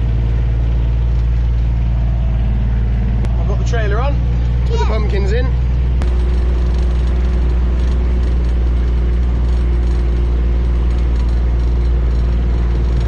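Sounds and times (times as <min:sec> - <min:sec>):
diesel engine running: 0:00.0 - 0:13.0
light mechanical rattle: 0:05.1 - 0:13.0.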